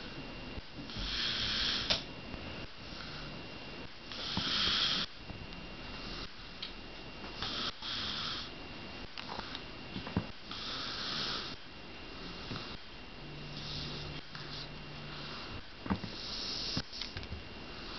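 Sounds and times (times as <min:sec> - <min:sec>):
person snoring: 0:00.9 - 0:02.0, 0:04.1 - 0:05.1, 0:07.4 - 0:08.5, 0:10.4 - 0:12.8, 0:13.5 - 0:16.8.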